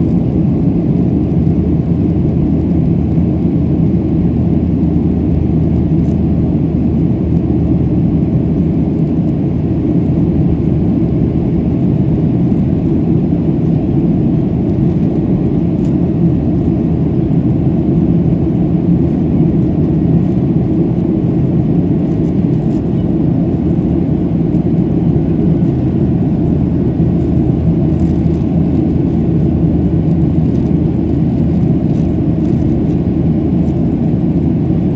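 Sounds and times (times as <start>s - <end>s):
jet engines on takeoff: 0.0s - 34.9s.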